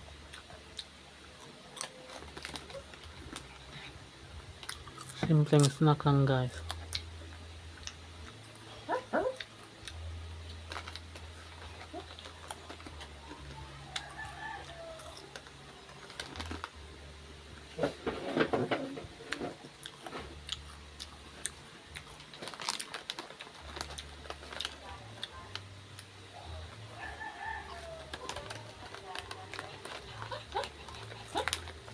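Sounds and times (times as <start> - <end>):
rooster crowing: 13.4 - 15.3, 26.9 - 28.7.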